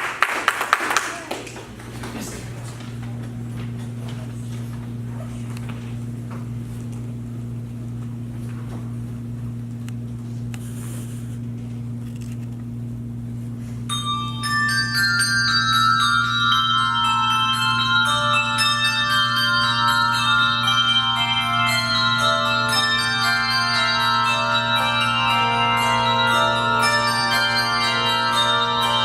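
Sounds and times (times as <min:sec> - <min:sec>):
steady low hum: 0:00.0 - 0:29.0
handbell choir playing: 0:13.9 - 0:29.0.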